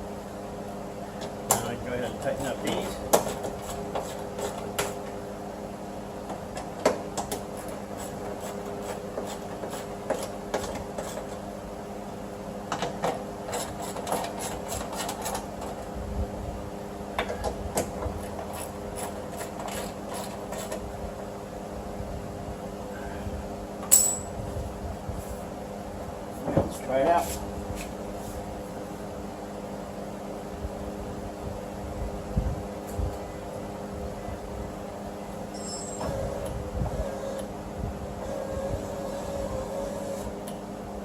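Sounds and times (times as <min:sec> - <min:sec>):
tools clicking and tapping metal: 0:23.8 - 0:24.3.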